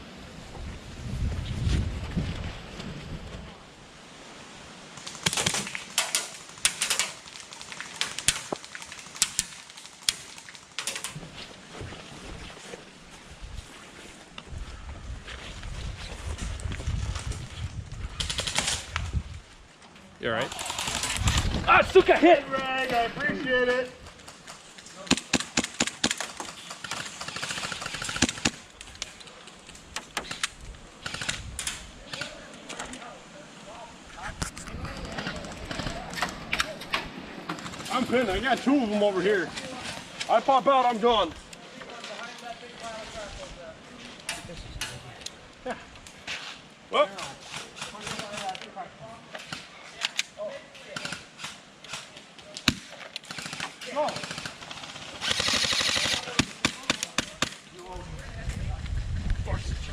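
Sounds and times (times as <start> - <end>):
airsoft guns firing: 20.4 - 22.2, 25.0 - 28.6, 50.9 - 57.7.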